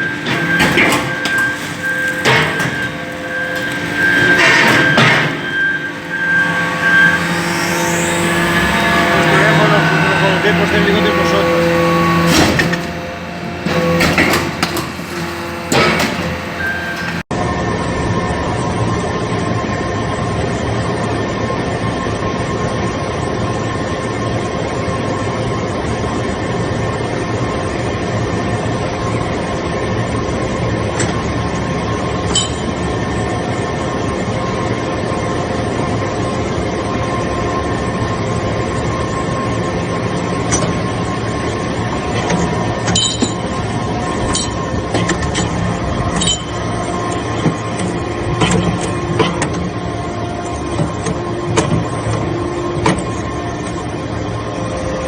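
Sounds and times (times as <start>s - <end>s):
baler machine drone: 0.0s - 55.0s.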